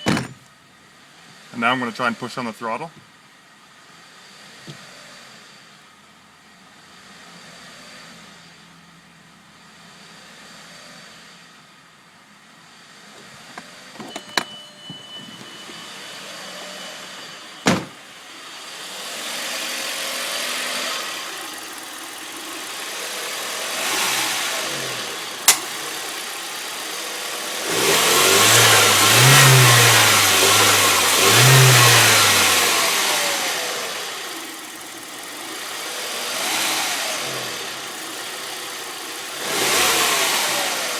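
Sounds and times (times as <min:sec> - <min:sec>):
car engine revving: 0:17.6 - 0:40.9.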